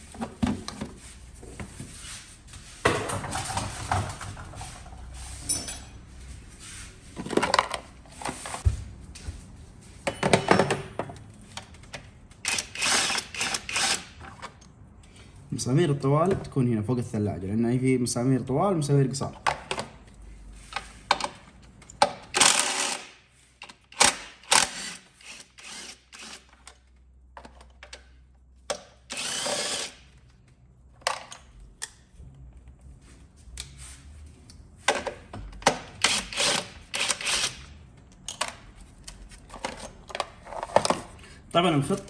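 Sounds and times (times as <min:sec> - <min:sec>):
tools clicking on bolts: 0:12.4 - 0:14.1, 0:36.0 - 0:40.2
ratchet rasping: 0:24.0 - 0:26.5.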